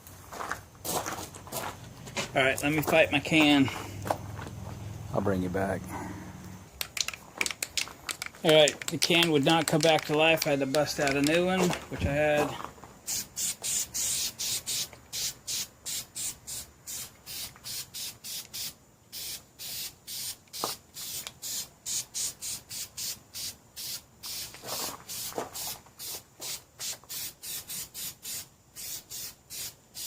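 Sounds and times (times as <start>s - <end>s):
aerosol can spraying in short bursts: 13.1s - 30.0s.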